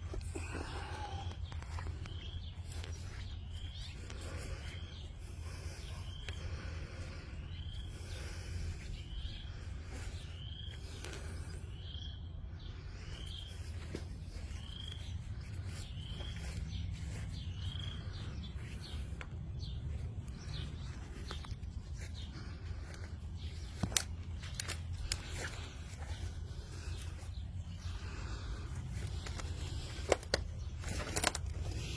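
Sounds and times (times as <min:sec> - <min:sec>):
songbird chirping: 0:00.0 - 0:31.9
steady low rumble: 0:00.0 - 0:31.9
sharp clicks: 0:23.7 - 0:25.6.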